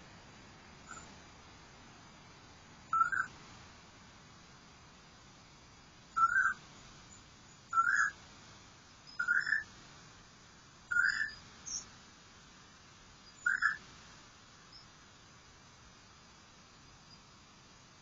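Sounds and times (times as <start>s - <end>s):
bird calling: 0.9s - 1.1s, 2.9s - 3.3s, 6.2s - 6.6s, 7.7s - 8.2s, 9.2s - 9.7s, 10.9s - 11.8s, 13.3s - 13.8s.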